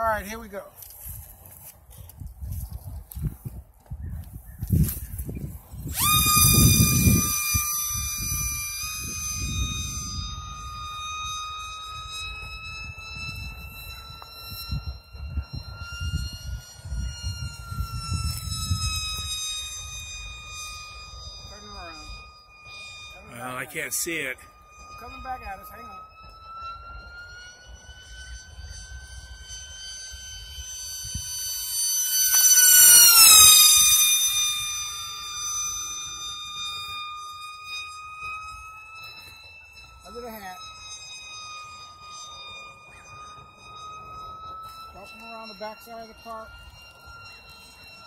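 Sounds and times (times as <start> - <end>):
electric motor and propeller whining: 0.0 - 48.0
wind buffeting microphone: 1.0 - 22.3.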